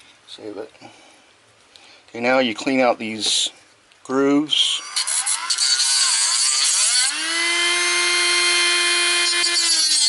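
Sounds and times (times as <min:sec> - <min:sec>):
rotary tool grinding metal: 0:04.8 - 0:10.0.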